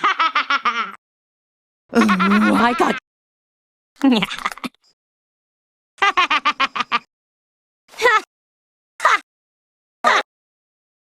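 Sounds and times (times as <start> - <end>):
cartoon character laughing: 0.0 - 1.0, 1.9 - 3.0, 6.0 - 7.1.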